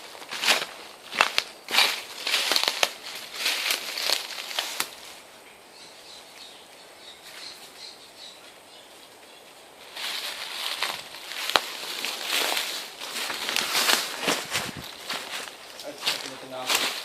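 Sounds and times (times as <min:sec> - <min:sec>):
pushing through dry undergrowth: 0:00.0 - 0:05.3, 0:09.8 - 0:17.0
twigs snapping: 0:00.3 - 0:05.0, 0:10.0 - 0:17.0.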